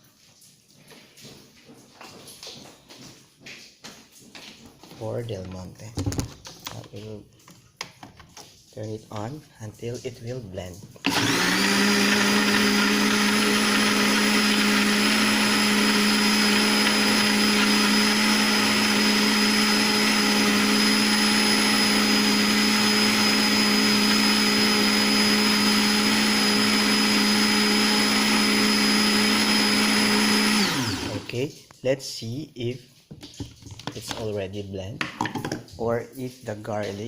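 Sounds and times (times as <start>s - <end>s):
blender motor humming and whining: 11.0s - 31.3s.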